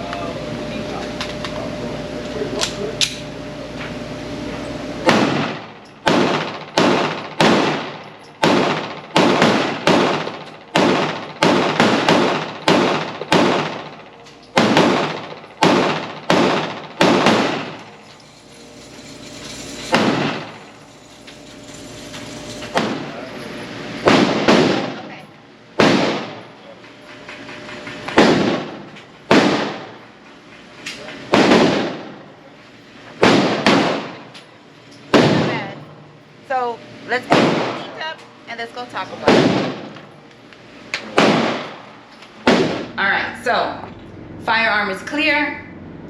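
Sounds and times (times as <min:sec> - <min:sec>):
pistol shots echoing: 0:05.0 - 0:18.0, 0:24.0 - 0:25.0, 0:25.8 - 0:26.5, 0:28.2 - 0:30.0, 0:31.3 - 0:32.1, 0:33.2 - 0:34.3, 0:41.2 - 0:42.9.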